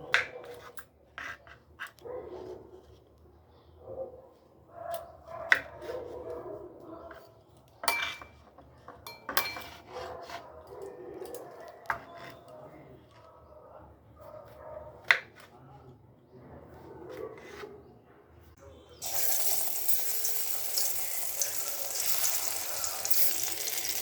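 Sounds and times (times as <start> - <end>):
utensils and dishes clinking: 9.0 - 9.8, 19.0 - 24.0.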